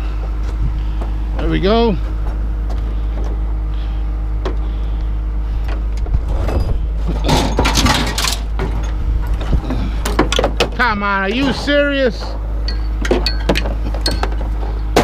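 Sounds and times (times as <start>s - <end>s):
truck engine running: 0.0s - 15.0s
loud metal clattering: 6.2s - 15.0s.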